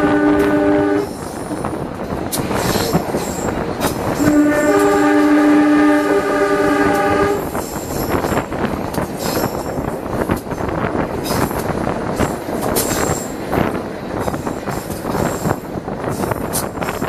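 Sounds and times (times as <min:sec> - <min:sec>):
locomotive horn chord: 0:00.0 - 0:01.1, 0:04.2 - 0:07.5
train wheels clattering on rails: 0:00.0 - 0:17.0.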